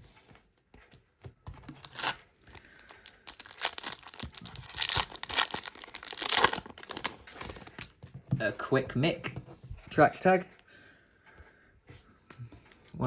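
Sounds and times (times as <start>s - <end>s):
foil wrapper tearing and crinkling: 1.8s - 7.9s.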